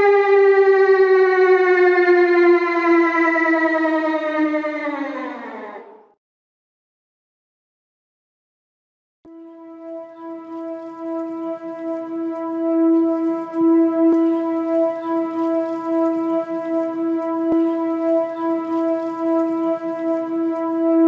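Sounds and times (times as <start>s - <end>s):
sustained warning tone: 9.6s - 21.0s.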